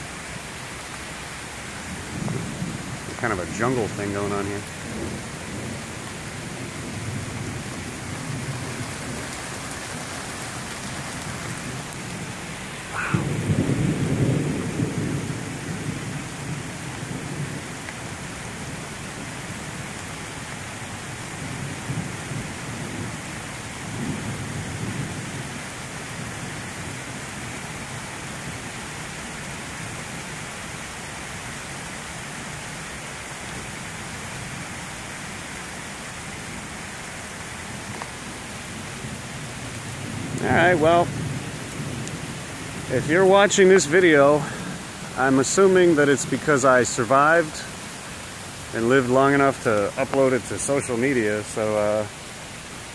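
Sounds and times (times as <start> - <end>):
rain falling on trees: 0.0 - 52.9
rumbles of thunder: 1.9 - 19.6, 21.2 - 27.4, 39.0 - 47.8
thunderclap: 11.2 - 16.2.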